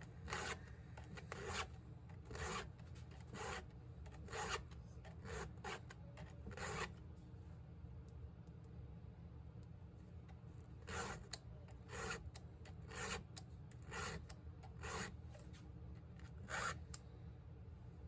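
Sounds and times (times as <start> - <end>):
hand file rasping on saw chain: 0.3 - 0.6, 1.3 - 1.7, 2.3 - 3.6, 4.3 - 4.6, 10.9 - 11.2, 11.9 - 12.3, 12.9 - 13.2, 13.9 - 15.2, 16.4 - 16.8.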